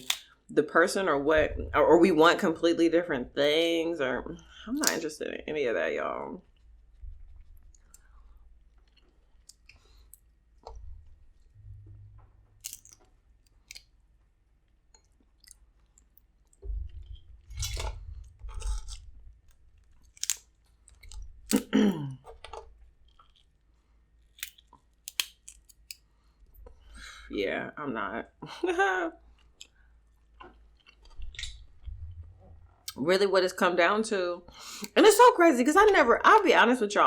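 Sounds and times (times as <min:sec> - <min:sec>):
sharp clicks and cracks: 0:00.0 - 0:00.4, 0:04.6 - 0:05.1, 0:12.5 - 0:14.0, 0:14.9 - 0:23.5, 0:24.3 - 0:26.0
chewing and crunching food: 0:06.4 - 0:27.1, 0:29.2 - 0:33.0.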